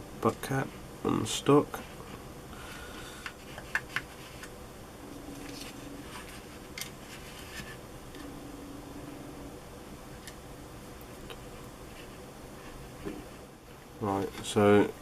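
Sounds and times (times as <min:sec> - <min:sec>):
faint low buzzes: 0:04.5 - 0:15.0.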